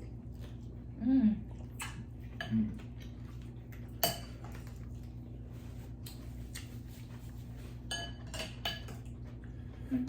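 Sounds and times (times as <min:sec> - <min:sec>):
steady low hum: 0:00.0 - 0:10.0
utensils clinking against a dish: 0:03.8 - 0:04.8, 0:07.7 - 0:09.2.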